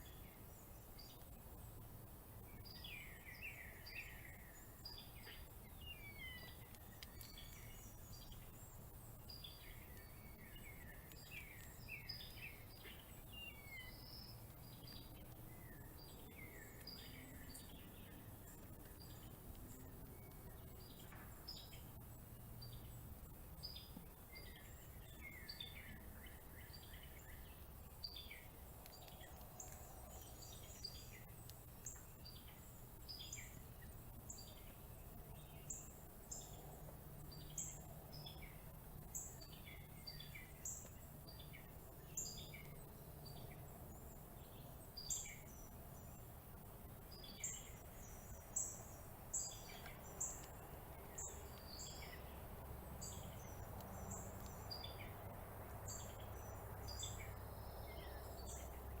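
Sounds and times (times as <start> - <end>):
low steady hum: 0.0 - 59.0
small birds chirping: 0.0 - 59.0.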